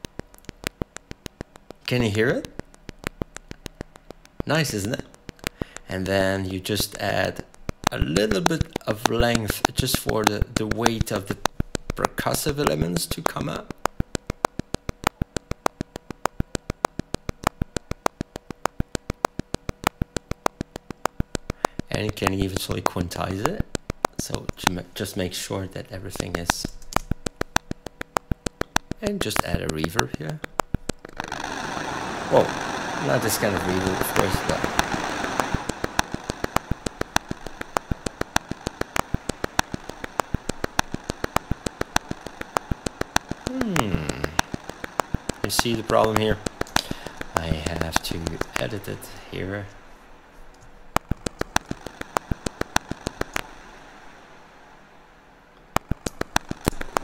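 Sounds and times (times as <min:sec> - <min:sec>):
glitchy clicky percussion loop: 0:00.0 - 0:49.8, 0:50.9 - 0:53.6, 0:55.7 - 0:57.0
faint hiss: 0:31.1 - 0:57.0.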